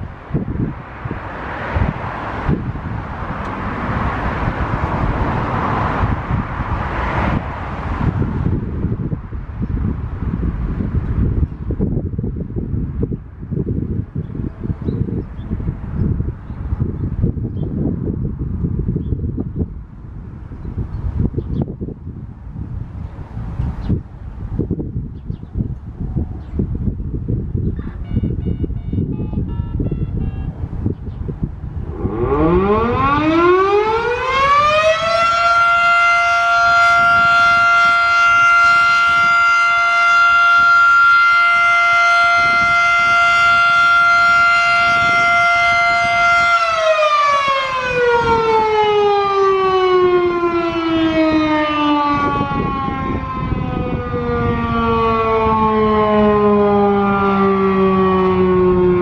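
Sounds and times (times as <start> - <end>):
electric fire siren: 27.8 - 30.7, 31.8 - 59.0.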